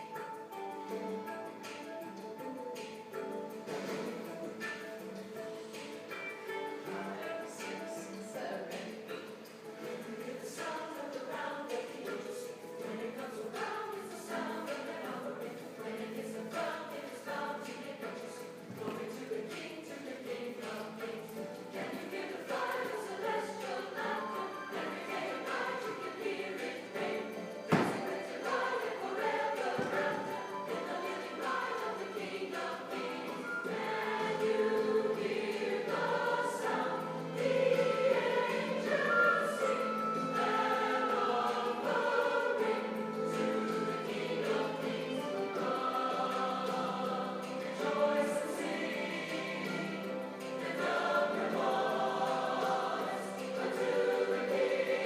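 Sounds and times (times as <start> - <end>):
choir singing: 0.0 - 55.0
thump: 27.7 - 28.1.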